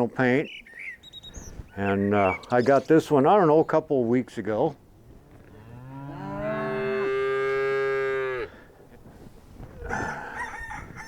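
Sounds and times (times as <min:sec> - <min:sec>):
cow mooing: 0:05.5 - 0:08.5.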